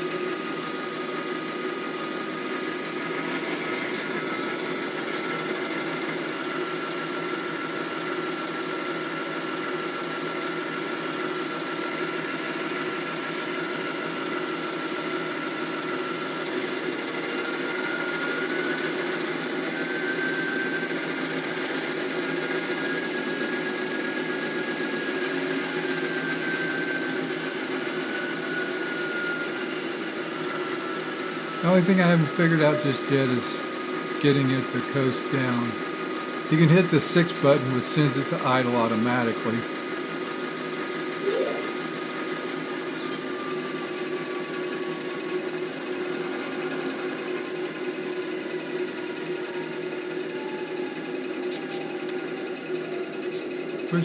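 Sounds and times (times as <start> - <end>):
diesel locomotive engine through speaker: 0.0 - 54.0.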